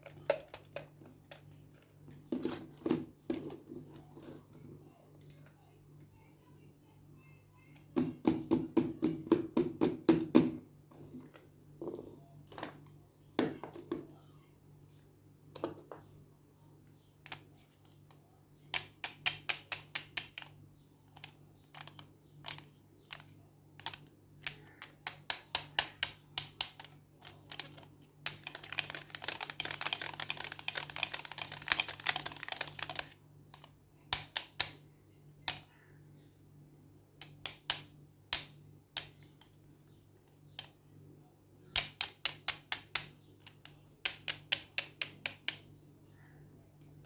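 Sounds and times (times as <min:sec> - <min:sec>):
packaging crackling: 0:27.3 - 0:33.1.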